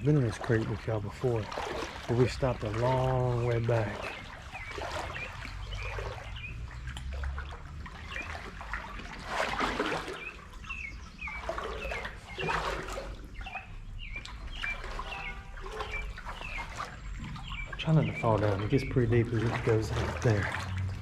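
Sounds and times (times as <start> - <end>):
footsteps splashing through water: 0.0 - 21.0
bird chirping: 2.1 - 7.0, 10.0 - 20.5.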